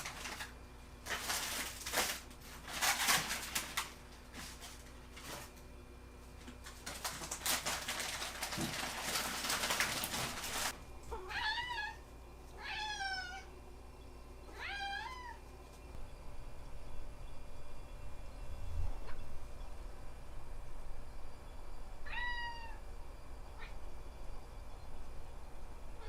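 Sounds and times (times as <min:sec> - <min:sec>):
rustling: 0:00.0 - 0:05.7, 0:06.3 - 0:10.8
cat meowing: 0:11.1 - 0:12.0, 0:12.6 - 0:13.5, 0:14.5 - 0:15.4, 0:22.0 - 0:22.8.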